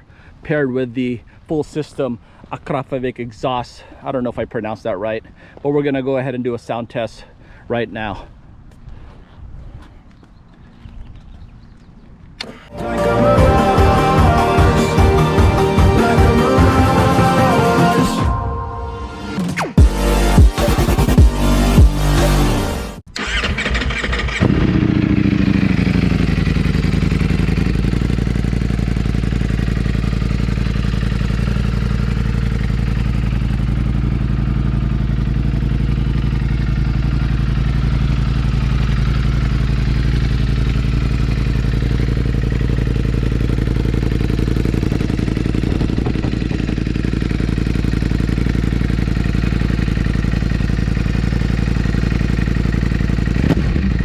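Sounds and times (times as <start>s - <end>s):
motorcycle engine idling: 23.2s - 54.0s.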